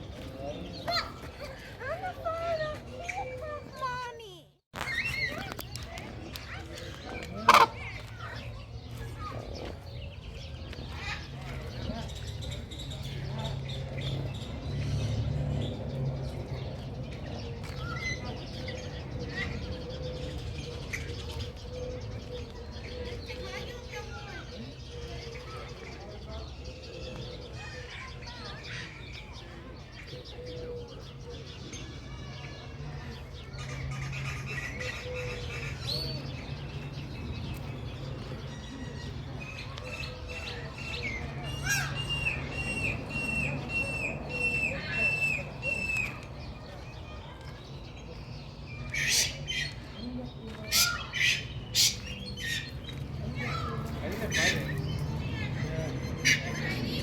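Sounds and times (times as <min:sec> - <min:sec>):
birds chirping: 0:00.0 - 0:57.0.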